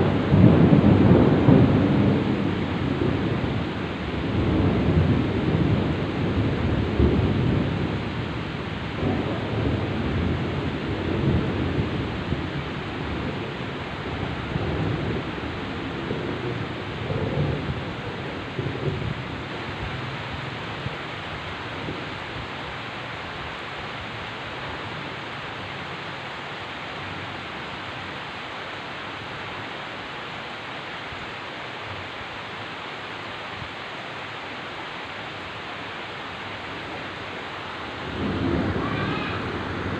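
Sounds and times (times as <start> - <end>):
low thunder rumble: 0.0 - 23.1, 36.8 - 39.9
heavy rain: 0.0 - 39.9.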